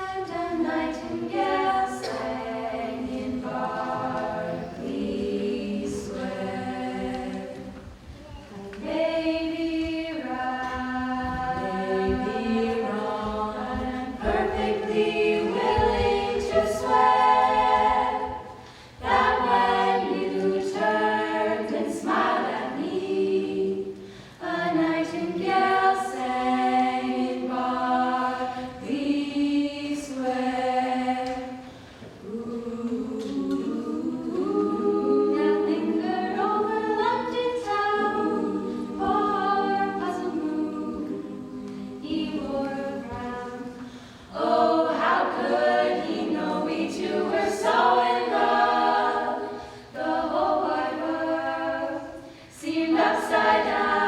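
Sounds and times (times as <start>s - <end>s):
women singing in close harmony: 0.0s - 54.0s
singers breathing: 18.5s - 19.0s, 23.9s - 24.4s, 31.6s - 32.2s, 43.8s - 44.4s, 49.5s - 50.0s, 52.1s - 52.6s.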